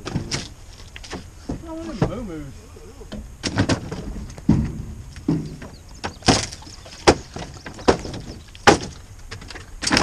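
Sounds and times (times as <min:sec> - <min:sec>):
wooden boards banging: 0:00.0 - 0:02.3, 0:03.1 - 0:10.0.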